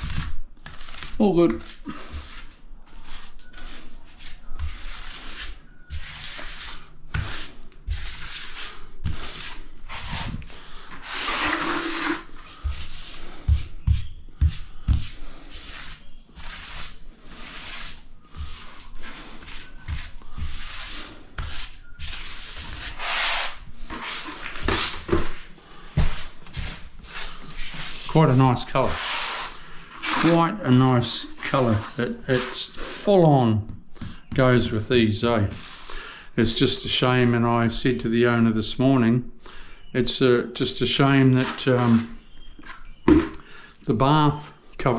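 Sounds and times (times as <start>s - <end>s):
tool scraping grout: 0.0s - 33.2s, 35.4s - 36.2s, 41.1s - 43.5s.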